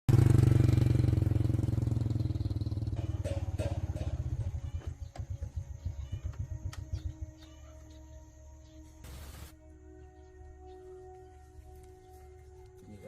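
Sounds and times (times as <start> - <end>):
diesel engine chugging: 0.1 - 7.4
light metallic clanks: 3.0 - 4.6.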